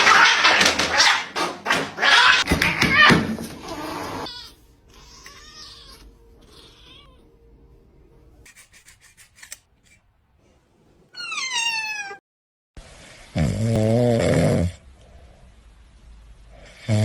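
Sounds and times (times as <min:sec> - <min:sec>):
cat meowing: 0:02.0 - 0:07.4, 0:11.2 - 0:12.2.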